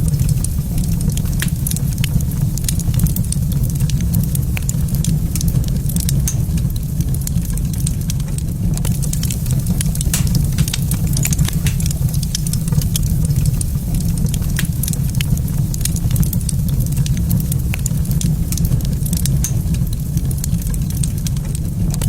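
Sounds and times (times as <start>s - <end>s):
fireplace fire crackling: 0.0s - 22.0s
steady low rumble: 0.0s - 22.0s
sharp pops: 10.0s - 12.8s.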